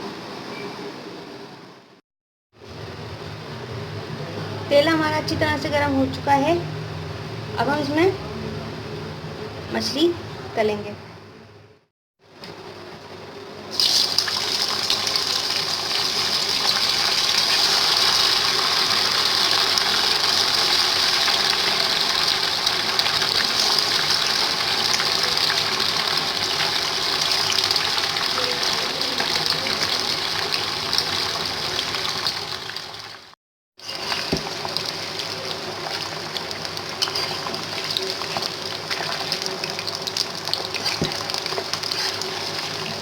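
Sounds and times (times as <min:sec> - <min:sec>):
fish sizzling in hot oil: 0:13.7 - 0:43.0.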